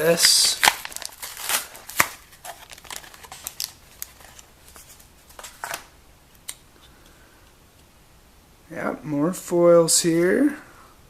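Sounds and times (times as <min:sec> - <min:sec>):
plastic packaging crinkling: 0:00.0 - 0:05.9.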